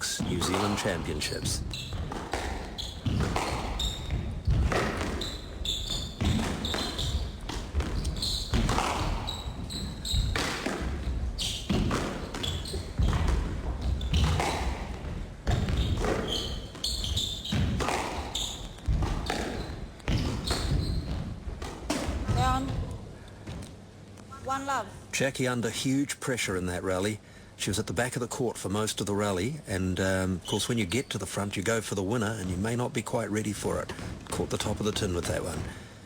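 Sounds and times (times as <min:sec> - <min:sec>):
squash ball hitting rackets and walls: 0:00.2 - 0:23.7.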